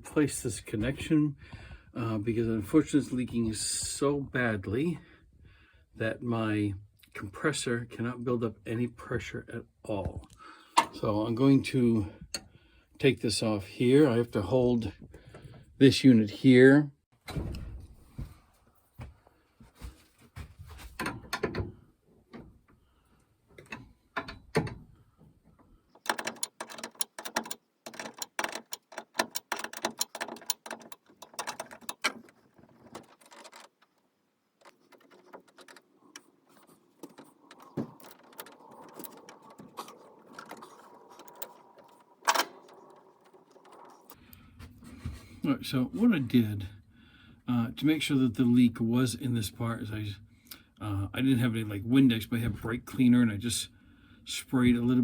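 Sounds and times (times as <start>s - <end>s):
fast ratchet-like clicking: 26.0s - 33.9s
metal parts clanking: 26.0s - 44.2s.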